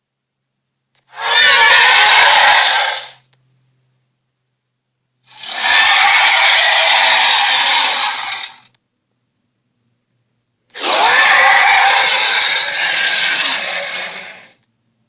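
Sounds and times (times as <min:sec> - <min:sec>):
harsh rasping creature burst: 0:01.1 - 0:03.2, 0:05.3 - 0:08.7, 0:10.8 - 0:14.6.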